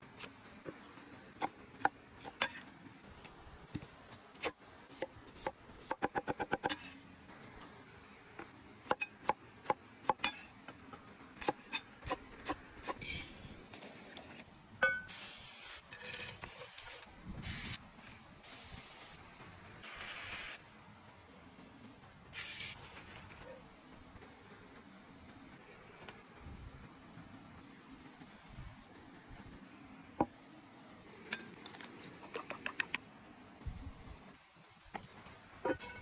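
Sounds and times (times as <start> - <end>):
hiss: 15.0 - 20.6, 22.3 - 23.2.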